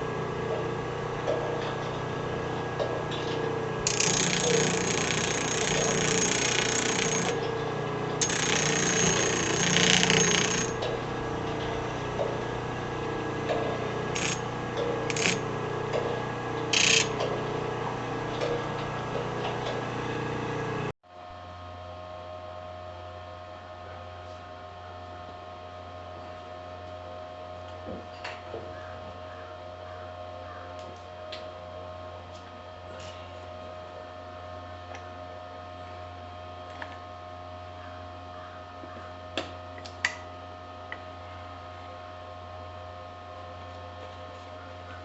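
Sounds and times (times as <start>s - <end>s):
drill press motor humming: 0.0s - 21.0s
drill bit cutting: 3.8s - 7.4s, 8.2s - 10.8s, 14.1s - 14.5s, 15.1s - 15.5s, 16.7s - 17.2s.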